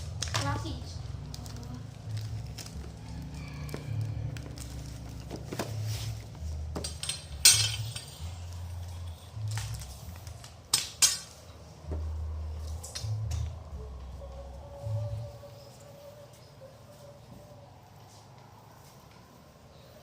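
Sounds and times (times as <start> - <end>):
low rumble: 0.0 - 10.8, 11.4 - 15.8
hard objects clinking and knocking: 6.6 - 11.6.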